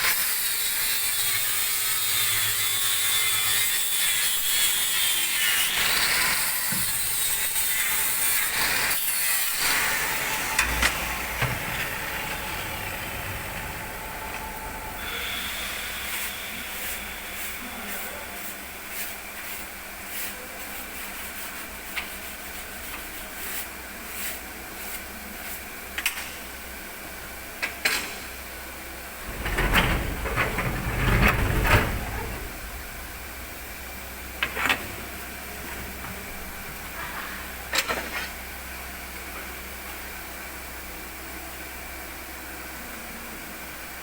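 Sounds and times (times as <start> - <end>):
welding hiss: 0.0 - 18.6.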